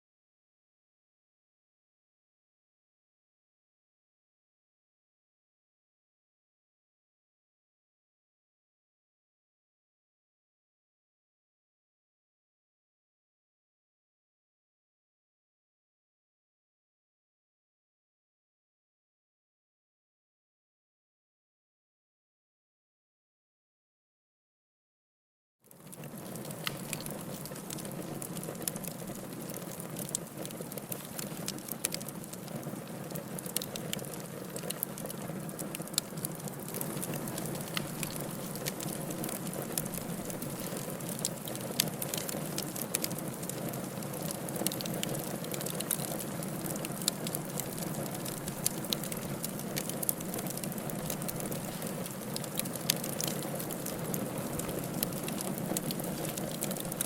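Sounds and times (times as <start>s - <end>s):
fire burning with crackles: 25.6s - 57.0s.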